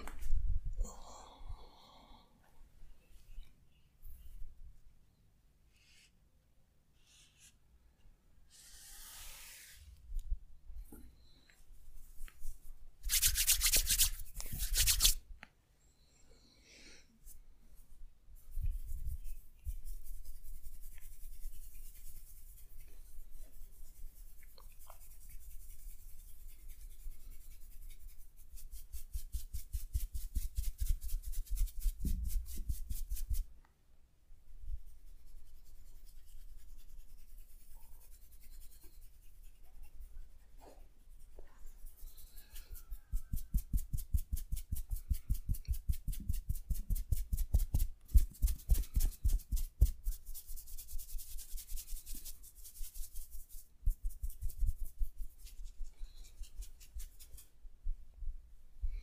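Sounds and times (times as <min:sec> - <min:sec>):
hands rubbing over skin: 0:12.1 - 0:15.2, 0:18.4 - 0:33.5, 0:35.1 - 0:40.4, 0:41.1 - 0:57.6.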